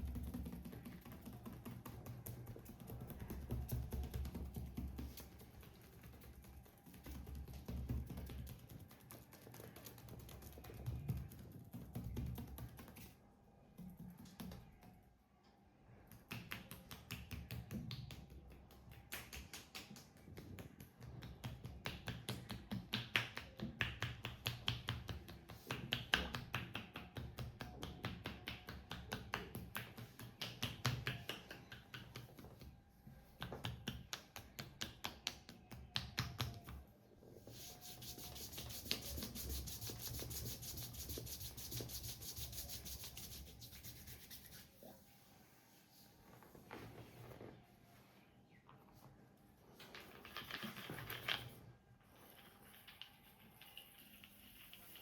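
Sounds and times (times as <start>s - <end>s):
percussive strokes on skin: 37.5s - 44.8s.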